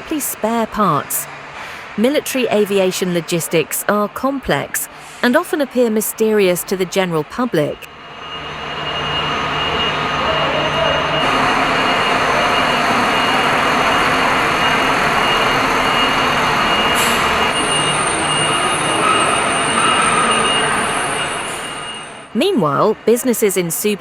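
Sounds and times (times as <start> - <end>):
loud mechanical noise with whine: 6.2 - 22.4.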